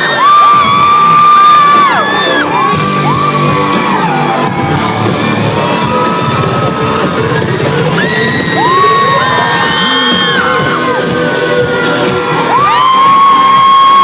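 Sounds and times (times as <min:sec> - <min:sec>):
audience screaming and cheering: 0:00.0 - 0:14.0
loud pop music: 0:00.0 - 0:14.0.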